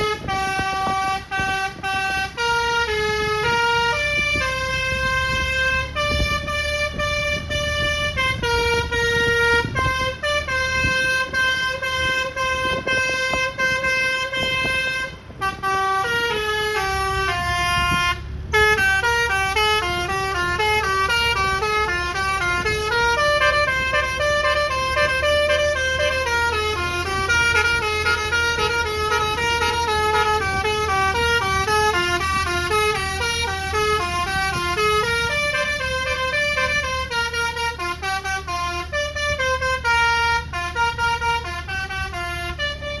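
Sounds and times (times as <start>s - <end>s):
bus engine hum: 0.0s - 43.0s
multi-tone air horn tune: 0.0s - 43.0s.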